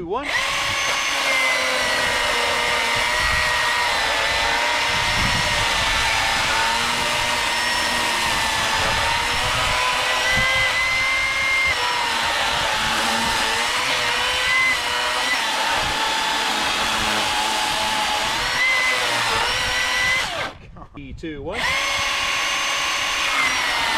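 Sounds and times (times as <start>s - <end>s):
chainsaw cutting log: 0.0s - 20.6s, 21.5s - 23.9s.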